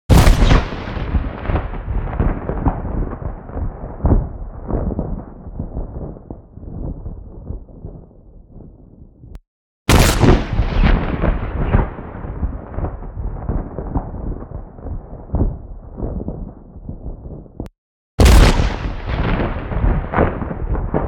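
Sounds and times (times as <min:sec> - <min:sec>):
low thunder rumble: 0:00.1 - 0:21.0
thunderclap: 0:00.1 - 0:21.0.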